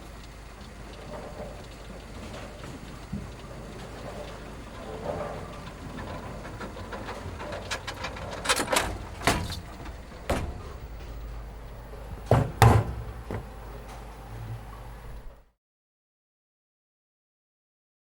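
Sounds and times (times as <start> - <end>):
steady low hum: 0.0 - 15.5
sharp knocks and clatters: 1.0 - 11.3, 12.1 - 14.1.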